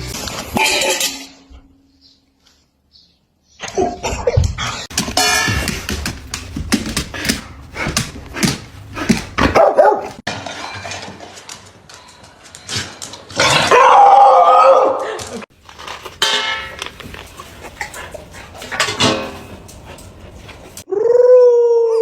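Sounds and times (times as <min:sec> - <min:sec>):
dog barking and yipping: 0:09.4 - 0:10.3, 0:13.7 - 0:15.0.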